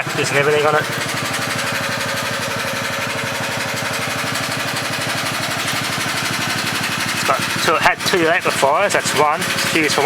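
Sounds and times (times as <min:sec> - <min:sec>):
car engine idling with knocking: 0:00.0 - 0:10.0.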